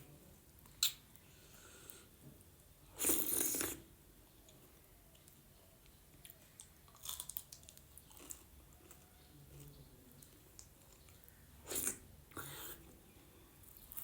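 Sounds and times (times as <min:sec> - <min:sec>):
wet mouthful eating: 0:11.6 - 0:12.8.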